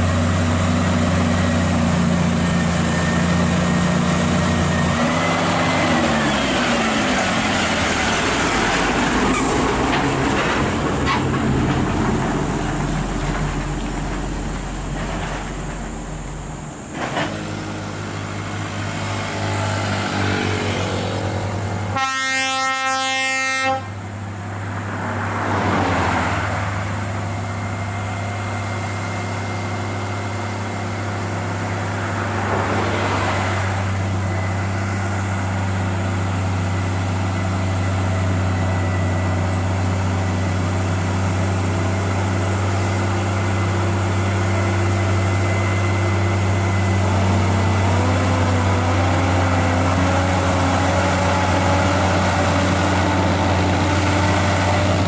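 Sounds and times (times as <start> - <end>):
truck diesel engine running: 0.0 - 22.3, 23.8 - 55.0
passing traffic rushing: 0.0 - 55.0
truck horn blast: 21.9 - 24.0.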